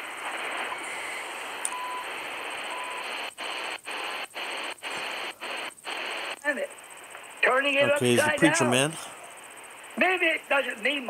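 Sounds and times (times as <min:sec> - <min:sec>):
radio static hissing: 0:00.0 - 0:11.0.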